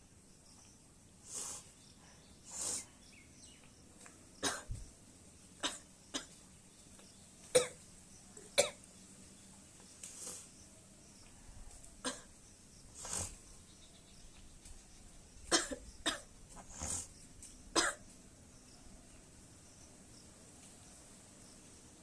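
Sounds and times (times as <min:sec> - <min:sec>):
woman coughing: 0:04.4 - 0:04.7, 0:15.5 - 0:16.2.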